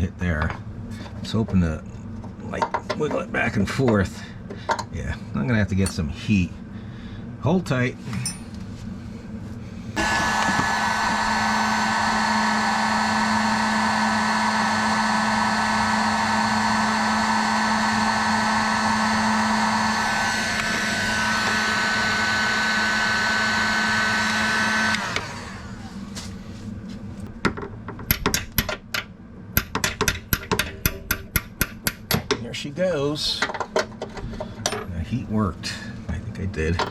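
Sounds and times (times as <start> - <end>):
tools clicking and tapping on metal: 2.5 - 3.2, 27.5 - 32.4, 33.4 - 34.9
heat gun blowing with whining hum: 9.2 - 26.8.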